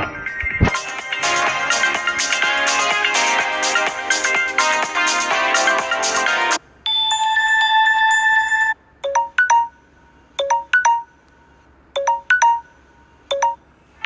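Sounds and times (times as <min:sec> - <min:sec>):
held electronic ringtone: 0:05.6 - 0:09.7, 0:12.0 - 0:12.7.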